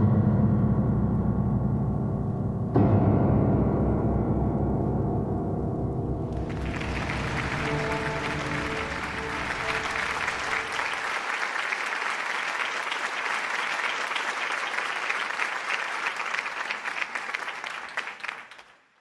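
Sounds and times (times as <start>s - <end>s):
held music notes: 6.4s - 11.2s
audience applauding: 6.4s - 19.0s.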